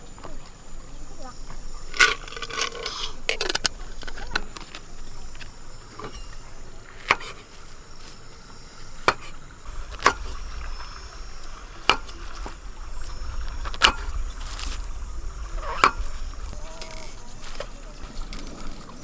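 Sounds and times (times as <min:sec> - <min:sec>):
steady low rumble: 0:09.5 - 0:19.0.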